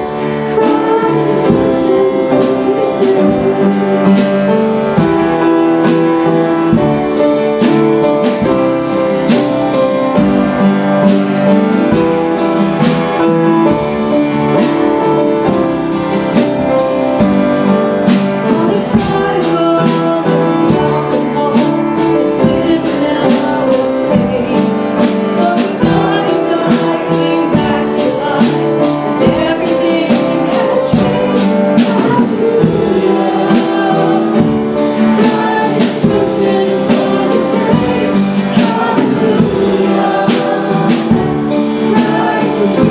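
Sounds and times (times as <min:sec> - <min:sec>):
voices singing: 0:00.0 - 0:05.2, 0:18.5 - 0:42.9
steady drum beat: 0:00.0 - 0:42.9
worship band playing: 0:00.0 - 0:42.9.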